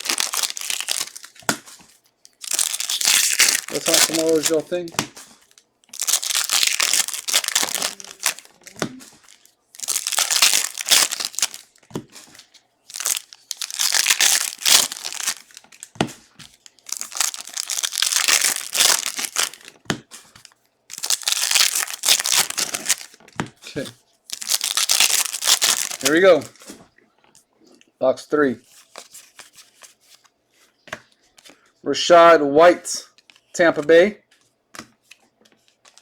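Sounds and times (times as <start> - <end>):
card pack wrappers crinkling: 0.0 - 19.8, 20.4 - 26.7, 35.0 - 36.0.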